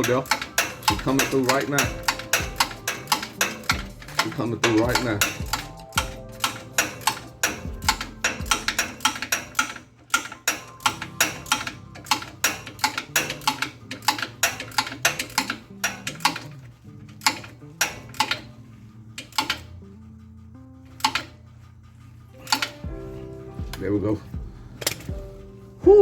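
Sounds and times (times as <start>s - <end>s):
ratchet wrench clicking: 0.0s - 19.8s, 20.9s - 21.4s, 22.4s - 23.0s, 24.7s - 25.2s
background music: 0.0s - 26.0s.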